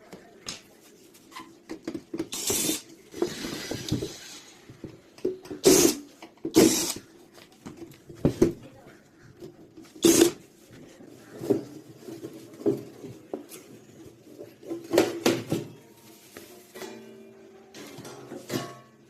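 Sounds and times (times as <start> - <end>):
objects knocking and clattering: 1.5 - 2.4, 3.1 - 6.6, 7.5 - 8.6, 11.2 - 15.8, 16.7 - 19.0.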